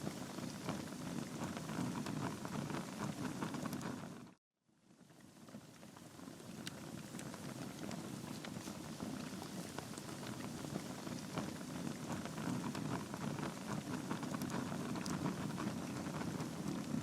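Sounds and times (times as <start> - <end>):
logs crackling and popping: 5.5 - 17.0
fireplace flame rushing: 6.0 - 17.0.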